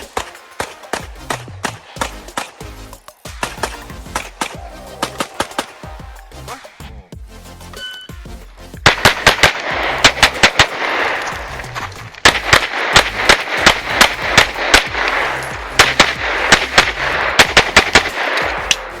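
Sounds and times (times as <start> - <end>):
rapid pistol fire: 0.0 - 2.8, 3.4 - 5.9, 8.8 - 11.6, 12.2 - 19.0
background music: 0.0 - 19.0.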